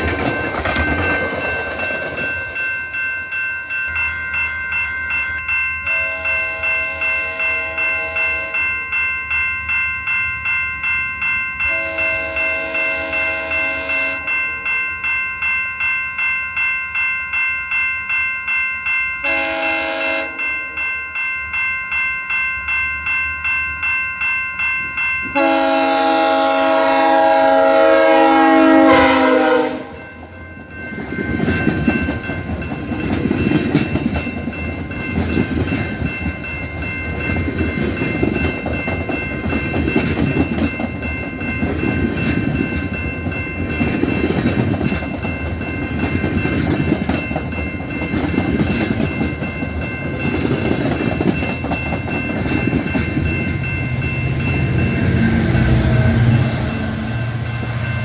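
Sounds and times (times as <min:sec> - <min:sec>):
train wheels clattering on rails: 0:00.0 - 0:03.0, 0:30.2 - 0:58.0
railway crossing bell ringing: 0:00.0 - 0:58.0
train horn blasts: 0:05.9 - 0:08.6, 0:11.7 - 0:14.3, 0:19.2 - 0:20.5, 0:25.3 - 0:30.1.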